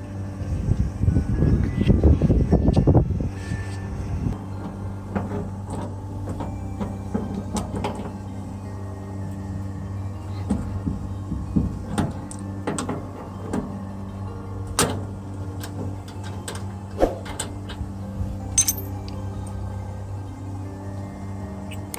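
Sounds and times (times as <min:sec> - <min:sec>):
steady mechanical hum: 0:00.0 - 0:21.9.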